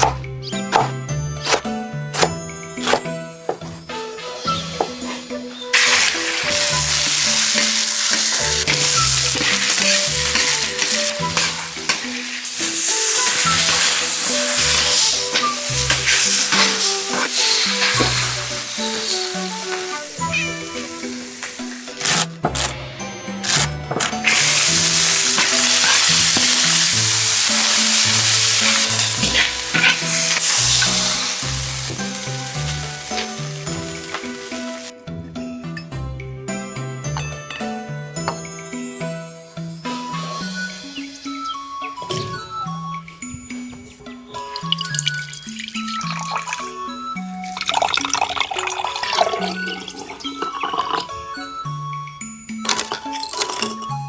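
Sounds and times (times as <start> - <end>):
slow background music: 0.0 - 54.0
food sizzling in hot pan: 5.7 - 22.7, 23.4 - 34.9, 44.5 - 46.8.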